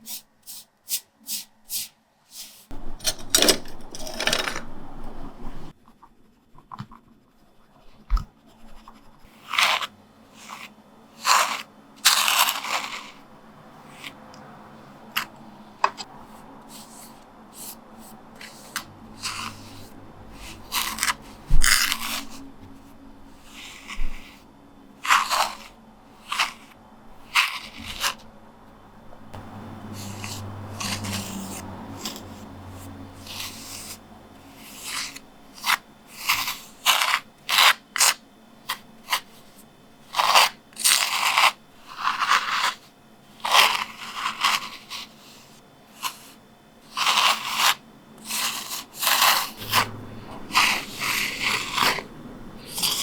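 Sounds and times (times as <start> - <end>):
scraping linoleum block: 8.6 - 13.2, 16.7 - 22.4, 29.3 - 53.0.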